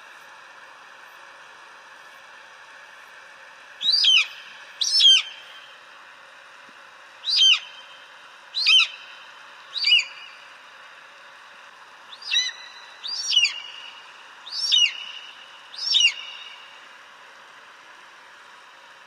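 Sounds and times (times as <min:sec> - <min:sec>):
eagle crying: 0:03.9 - 0:05.4, 0:07.2 - 0:07.8, 0:08.6 - 0:09.0, 0:12.1 - 0:13.8, 0:14.5 - 0:15.1, 0:15.8 - 0:16.4.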